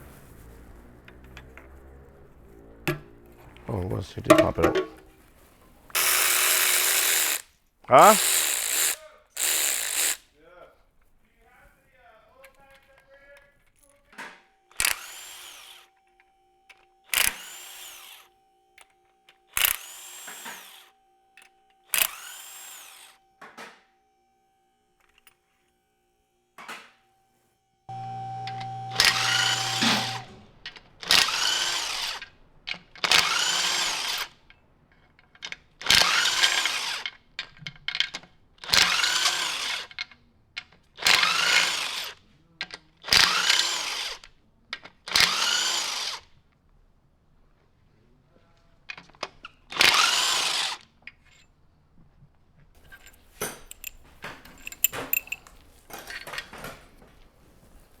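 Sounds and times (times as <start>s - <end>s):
power drill bursts: 5.9s - 10.2s, 14.7s - 16.1s, 16.8s - 18.4s, 19.5s - 21.0s, 21.9s - 23.2s, 27.9s - 34.5s, 35.8s - 37.2s, 38.6s - 40.0s, 41.0s - 42.2s, 43.0s - 44.3s, 45.1s - 46.3s, 49.7s - 50.8s
light metal clinks: 52.8s - 56.2s.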